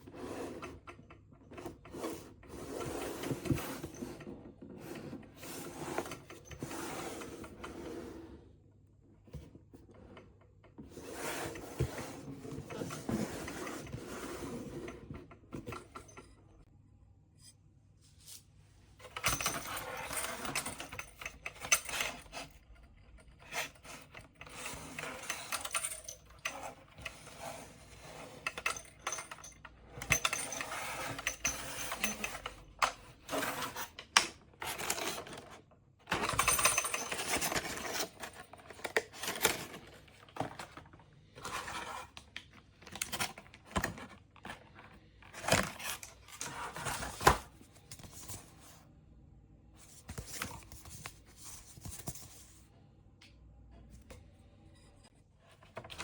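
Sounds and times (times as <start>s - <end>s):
plastic and metal parts clattering: 0.0s - 7.8s, 9.3s - 16.4s, 19.0s - 48.7s, 49.9s - 52.5s, 55.4s - 56.0s.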